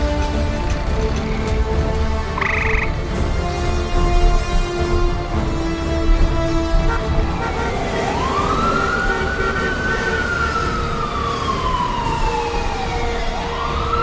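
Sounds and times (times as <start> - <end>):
siren wailing: 2.4 - 3.0, 6.6 - 14.0.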